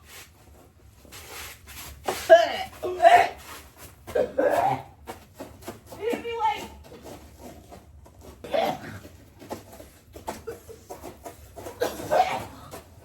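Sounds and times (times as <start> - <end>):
person coughing: 4.1 - 5.0, 8.4 - 9.0, 11.7 - 12.8.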